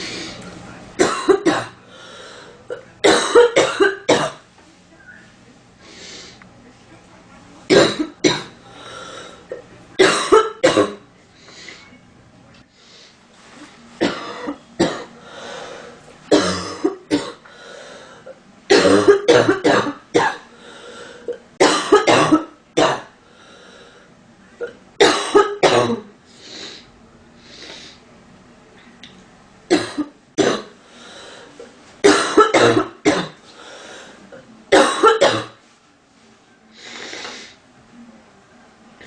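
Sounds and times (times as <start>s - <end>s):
woman coughing: 1.0s - 1.8s, 2.7s - 4.4s, 7.7s - 8.6s, 10.0s - 11.0s, 14.0s - 15.1s, 16.3s - 17.4s, 18.7s - 20.5s, 21.6s - 23.1s, 24.6s - 26.1s, 29.7s - 30.7s, 32.0s - 33.4s, 34.7s - 35.6s
woman breathing: 1.8s - 2.6s, 8.7s - 9.5s, 15.2s - 16.0s, 17.4s - 18.3s, 20.5s - 21.3s, 23.2s - 24.1s, 30.8s - 31.6s, 33.5s - 34.3s.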